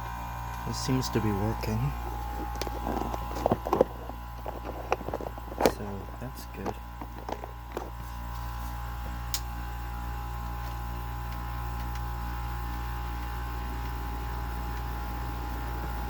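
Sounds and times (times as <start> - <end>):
air conditioner humming: 0.0 - 16.0.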